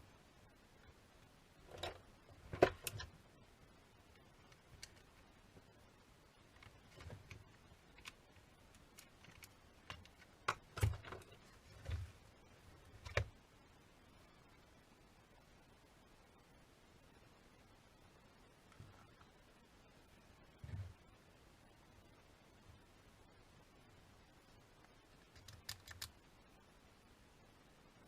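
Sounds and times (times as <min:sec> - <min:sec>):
small hard parts clicking: 0:06.5 - 0:11.4, 0:25.2 - 0:26.2.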